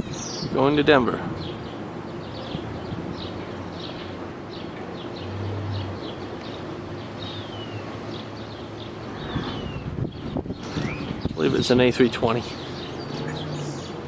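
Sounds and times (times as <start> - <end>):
descending whistled bird calls: 0.0 - 0.6, 7.2 - 14.0
wind noise: 0.0 - 3.6, 8.9 - 14.0
small birds chirping: 0.0 - 14.0.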